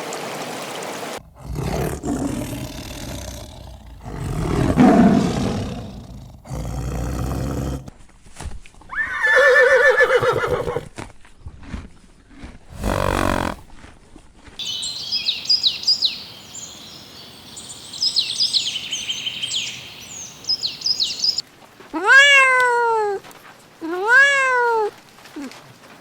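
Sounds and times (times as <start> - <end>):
horse whinnying: 8.9 - 10.9, 12.7 - 13.6
small birds chirping: 14.6 - 21.4
cat meowing: 22.0 - 23.2, 23.8 - 25.0.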